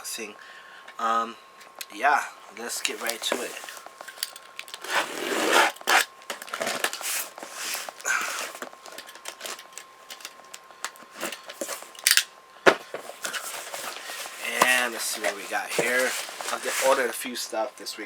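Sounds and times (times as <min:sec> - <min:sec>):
packaging rustling and crinkling: 0:02.7 - 0:12.1, 0:12.7 - 0:17.3.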